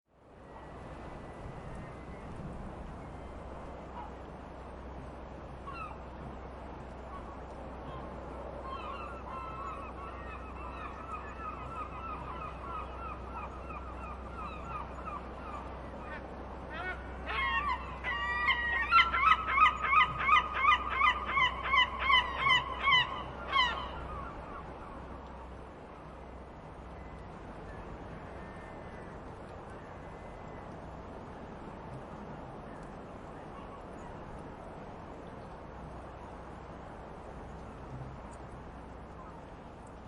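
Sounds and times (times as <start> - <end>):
gulls calling: 5.6 - 6.2, 7.0 - 25.2, 32.6 - 34.4.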